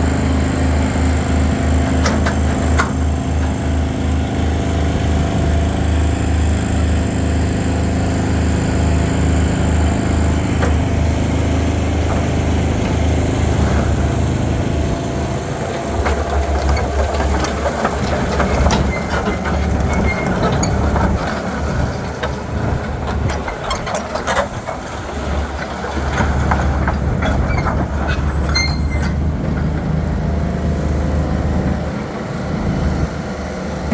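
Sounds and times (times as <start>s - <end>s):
excavator diesel engine running: 0.0s - 33.9s
knocks and clanks: 10.5s - 30.5s
short high squeaks: 27.2s - 29.2s.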